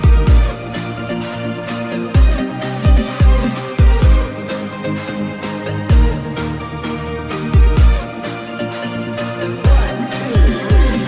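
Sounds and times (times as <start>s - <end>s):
electronic dance music: 0.0s - 11.0s.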